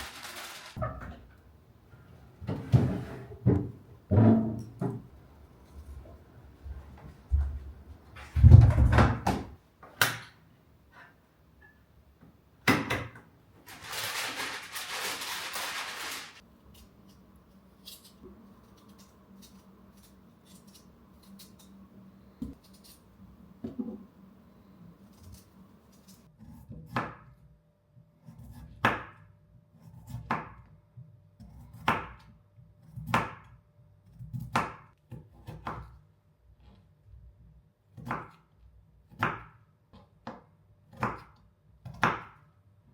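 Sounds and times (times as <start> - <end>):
rustling or scraping: 0.0 - 1.0, 13.6 - 16.4.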